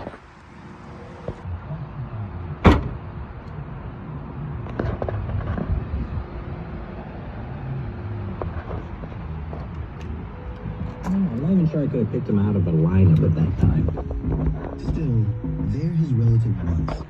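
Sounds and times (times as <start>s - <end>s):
car door slamming: 2.6s - 3.1s.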